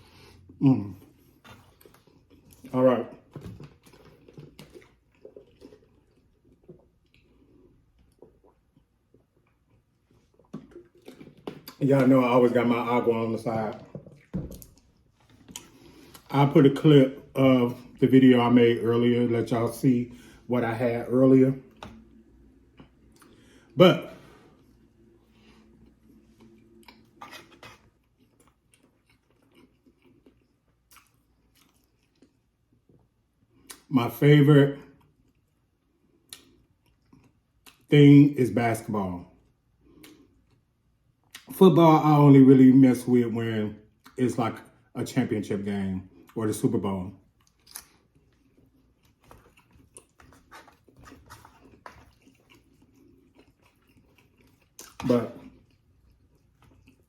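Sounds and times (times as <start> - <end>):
faint chewing with mouth clicks: 0.0 - 12.3, 13.6 - 16.4, 21.6 - 33.9, 34.8 - 37.9, 39.2 - 41.6, 43.9 - 44.9, 46.0 - 57.0.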